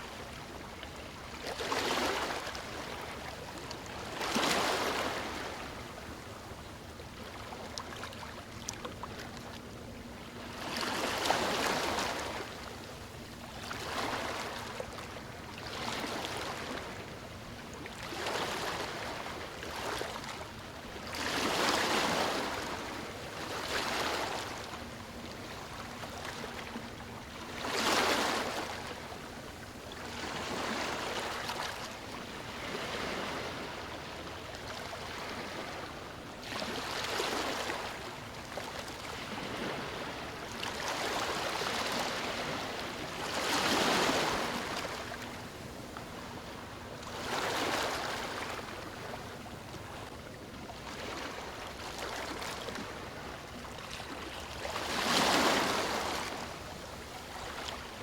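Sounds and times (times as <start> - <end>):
sea waves breaking: 13.6 - 58.0.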